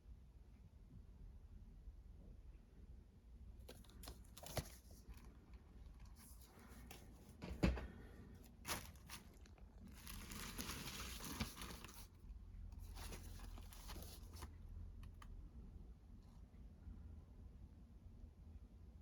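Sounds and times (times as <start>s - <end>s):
shrink-wrap tearing and crinkling: 8.6s - 12.2s.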